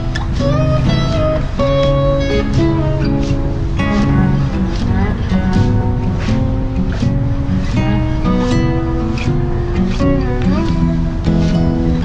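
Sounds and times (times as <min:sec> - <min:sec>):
plucked acoustic guitar music: 0:00.0 - 0:12.0.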